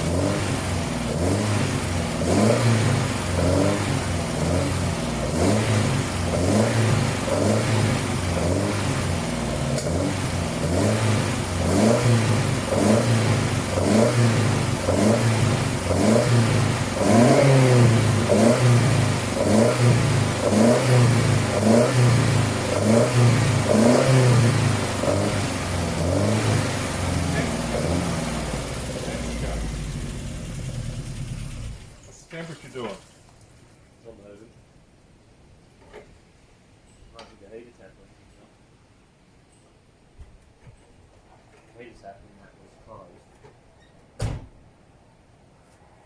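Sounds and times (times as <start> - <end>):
car engine revving: 0.0 - 32.1.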